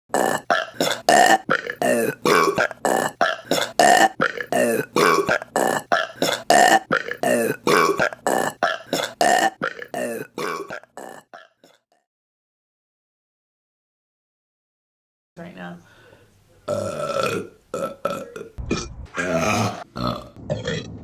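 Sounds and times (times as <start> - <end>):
woman burping: 0.1 - 11.8, 16.7 - 20.9.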